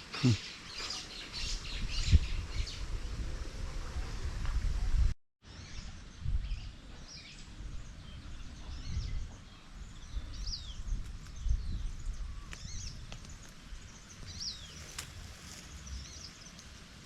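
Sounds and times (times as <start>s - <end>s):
wind buffeting microphone: 1.3s - 5.2s, 5.9s - 16.5s
birds chirping: 6.6s - 16.8s.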